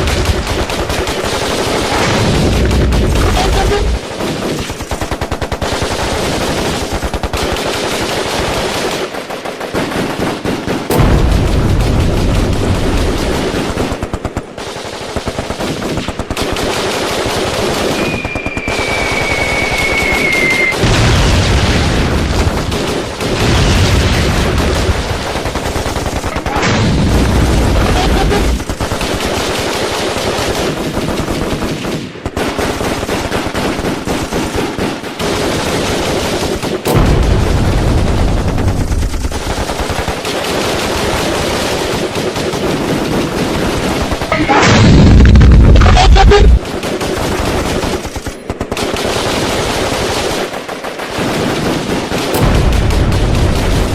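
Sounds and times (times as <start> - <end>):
machine-gun and rifle fire: 0.0 - 53.9
heavy explosion booms: 1.9 - 4.1, 10.9 - 13.4, 18.7 - 25.4, 26.3 - 28.8, 36.9 - 39.2, 44.3 - 46.6, 52.4 - 53.9
high falling whistle: 18.0 - 20.8.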